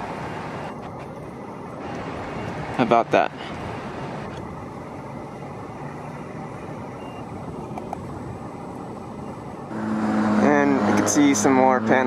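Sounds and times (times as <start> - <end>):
distant road traffic rumble: 0.0 - 12.0
faint short beep: 7.0 - 7.3.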